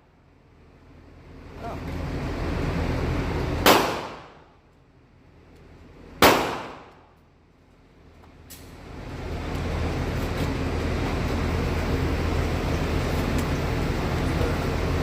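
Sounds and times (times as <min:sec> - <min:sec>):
vehicle low rumble: 0:00.0 - 0:15.0
shotgun shot: 0:03.6 - 0:04.5, 0:06.2 - 0:07.1.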